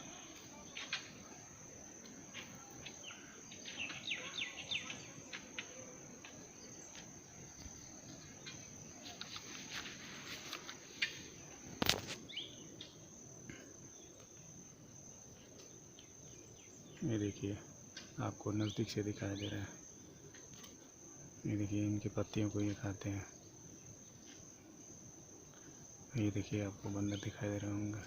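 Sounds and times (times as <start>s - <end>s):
insects droning: 0.0s - 28.0s
bird-like chirps: 2.3s - 11.4s, 12.2s - 13.1s, 15.3s - 20.7s, 26.2s - 28.0s.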